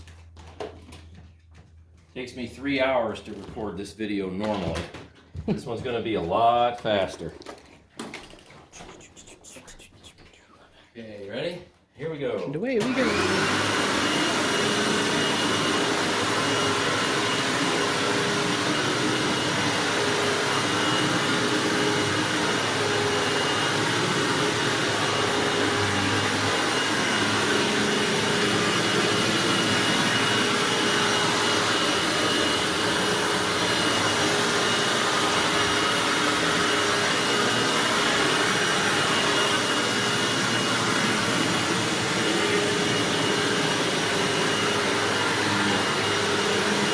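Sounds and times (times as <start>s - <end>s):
vacuum cleaner running: 12.6s - 46.9s.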